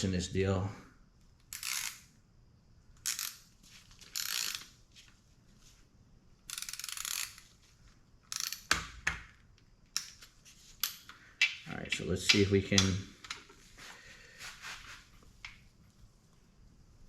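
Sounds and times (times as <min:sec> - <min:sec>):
ratchet torque wrench clicking: 0:01.5 - 0:02.1, 0:03.0 - 0:03.4, 0:04.0 - 0:04.7, 0:06.5 - 0:07.4, 0:08.3 - 0:08.8.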